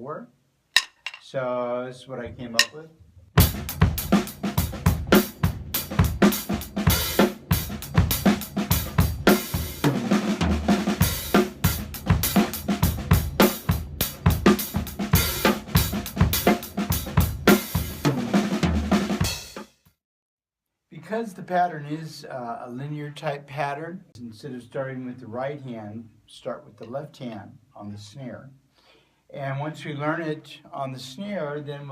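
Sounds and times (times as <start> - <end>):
acoustic drum kit groove: 0.8 - 1.3, 3.4 - 19.8
low ringing drum notes: 3.4 - 19.1.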